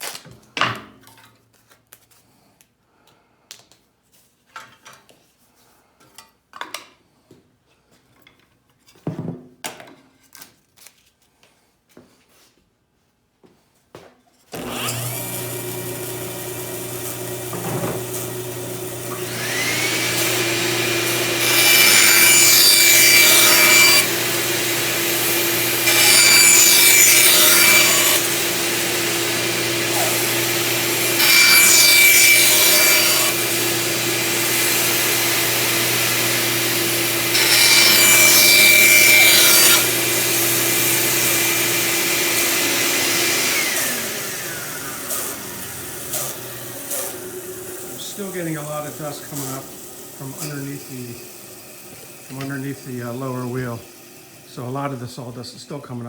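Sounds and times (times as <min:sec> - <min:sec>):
bandsaw blade cutting wood: 0:14.5 - 0:55.3
dust collector humming: 0:14.6 - 0:53.8
bandsaw motor running: 0:14.6 - 0:55.0.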